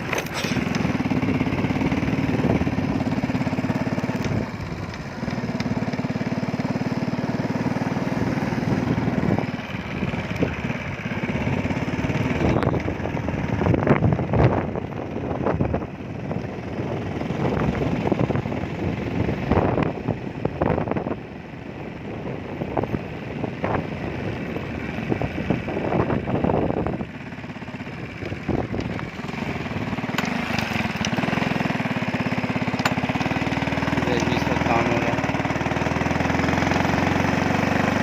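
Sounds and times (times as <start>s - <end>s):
wind buffeting microphone: 0.0s - 3.2s, 8.6s - 31.1s
evenly pulsing engine: 0.0s - 38.0s
vehicle engine running: 0.0s - 38.0s.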